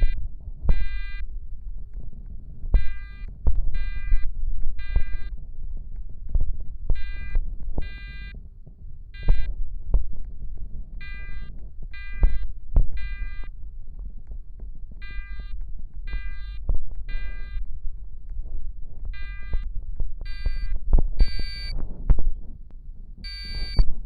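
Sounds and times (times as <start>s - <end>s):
fire alarm beeps: 0.0s - 1.2s, 2.8s - 5.3s, 7.0s - 8.4s, 9.2s - 9.5s, 11.0s - 13.5s, 15.0s - 17.6s, 19.2s - 19.7s, 20.3s - 21.8s, 23.2s - 23.9s
low rumble: 0.0s - 24.0s.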